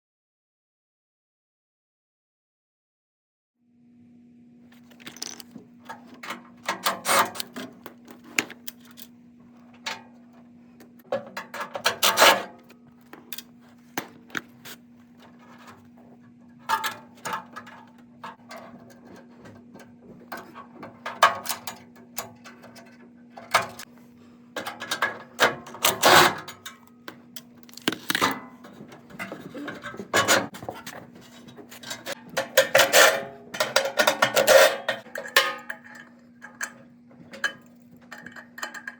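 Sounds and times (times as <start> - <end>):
metal tools clinking and scraping: 4.8 - 9.1, 24.6 - 38.9.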